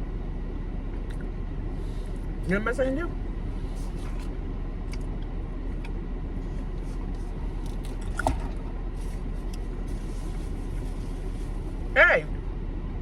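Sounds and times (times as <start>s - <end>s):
low rumble inside a car: 0.0s - 13.0s
quiet chewing: 3.8s - 11.6s.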